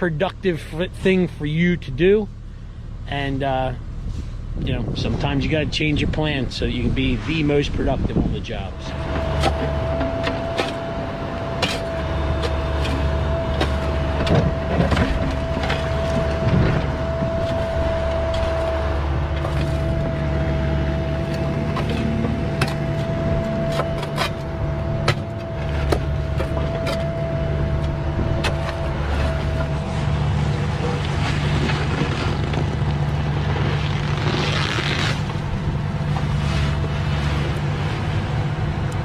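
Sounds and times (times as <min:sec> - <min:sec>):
diesel engine drone: 0:00.0 - 0:39.0
hydraulic whine: 0:02.3 - 0:39.0
bucket scraping stone and dirt: 0:11.6 - 0:20.3, 0:21.2 - 0:27.2, 0:28.4 - 0:35.4.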